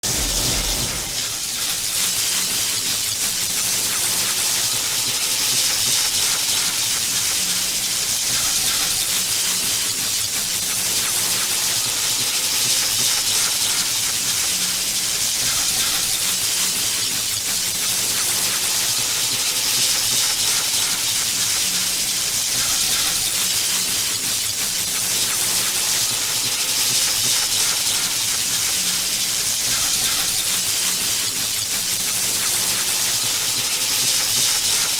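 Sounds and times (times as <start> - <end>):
electrical discharge hiss: 0.0 - 1.9.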